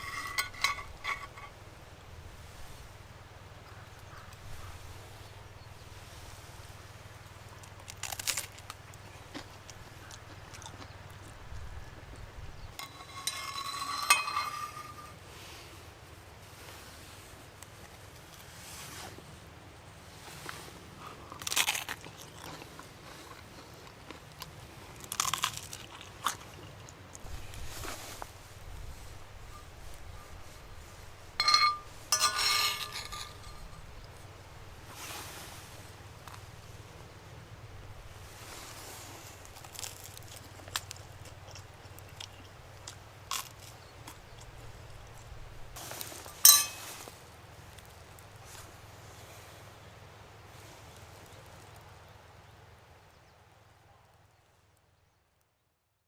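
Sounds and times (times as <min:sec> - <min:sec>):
biting crispy bread: 0:07.6 - 0:11.4, 0:21.1 - 0:27.3, 0:39.4 - 0:45.3
chewing crunches: 0:07.6 - 0:11.6, 0:20.4 - 0:27.6, 0:39.4 - 0:45.3
metal clinking on mess tin: 0:12.8 - 0:15.2, 0:31.4 - 0:33.9, 0:46.3 - 0:47.1.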